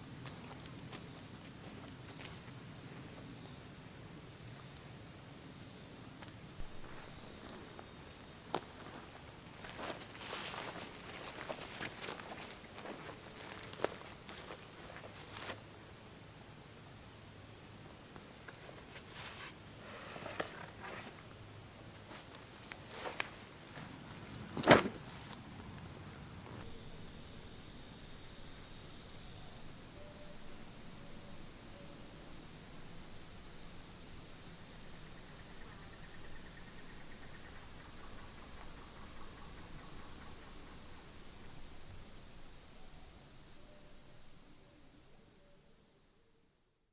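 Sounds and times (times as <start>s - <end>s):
insects droning: 0.0s - 46.9s
footsteps in leaf litter: 6.6s - 15.7s, 18.4s - 25.8s.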